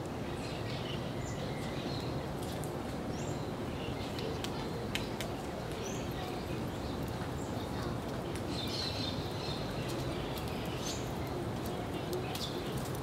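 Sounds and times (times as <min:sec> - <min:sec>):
birds chirping: 0:03.1 - 0:13.0.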